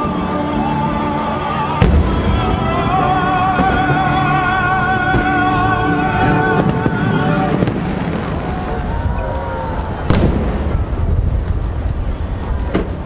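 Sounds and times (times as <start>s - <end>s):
fireworks rumbling bursts: 1.8s - 13.0s
sharp firework crack: 6.5s - 13.0s.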